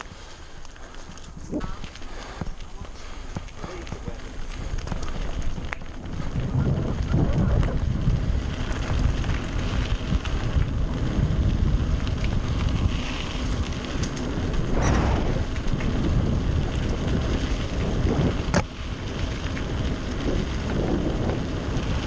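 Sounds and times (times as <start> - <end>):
bike rattling: 0.0 - 22.0
bike tyre rumble on dirt: 0.0 - 22.0
wind on microphone: 4.6 - 22.0.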